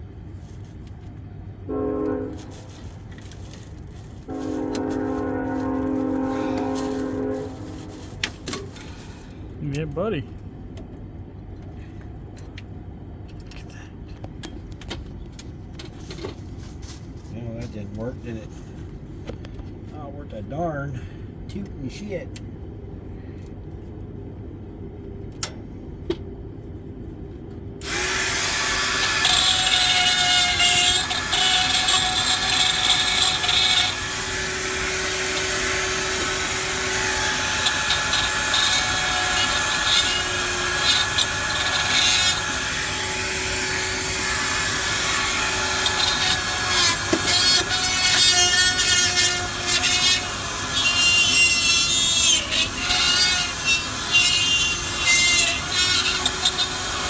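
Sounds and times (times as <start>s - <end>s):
machine motor whining: 27.8s - 57.0s.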